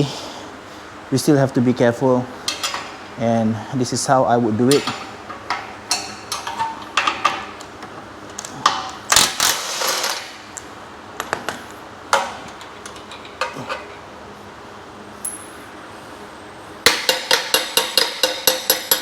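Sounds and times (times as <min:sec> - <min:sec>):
metal tools clinking on rack: 0:15.2 - 0:15.7.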